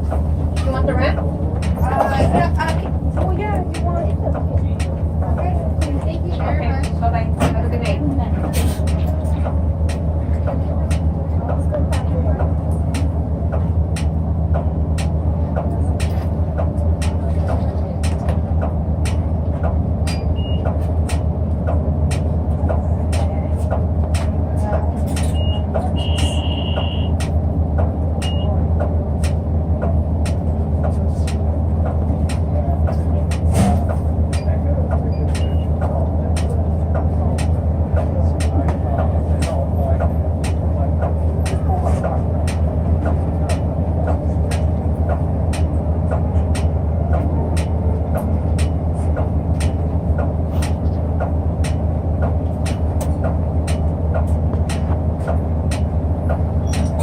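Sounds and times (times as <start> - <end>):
bus engine rumble: 0.0 - 57.0
sharp clicks and knocks: 6.8 - 57.0
high electronic beep: 25.3 - 27.2.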